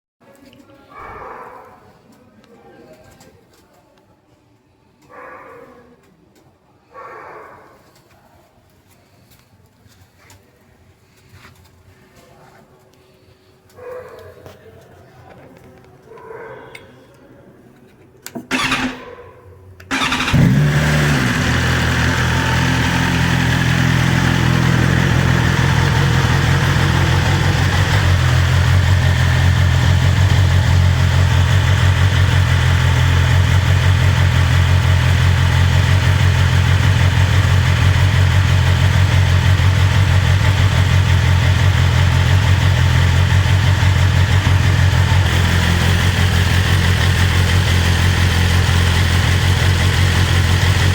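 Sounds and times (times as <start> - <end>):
motorcycle engine revving and idling: 18.4 - 19.0, 19.9 - 50.9
starter motor cranking: 18.5 - 19.0, 19.9 - 30.4.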